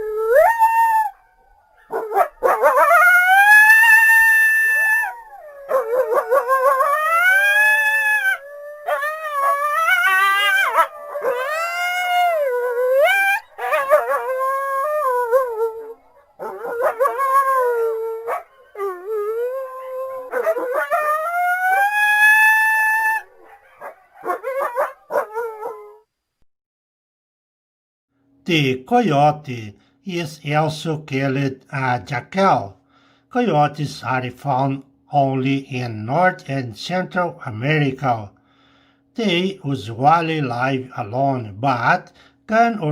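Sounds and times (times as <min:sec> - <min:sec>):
coyotes yipping: 0:00.0 - 0:19.4, 0:20.1 - 0:25.9
coyotes howling: 0:00.0 - 0:26.0.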